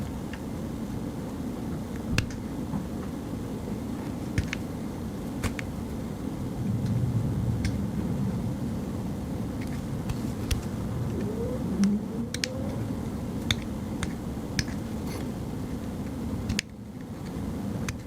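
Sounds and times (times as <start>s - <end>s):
low rumble: 6.1s - 14.5s.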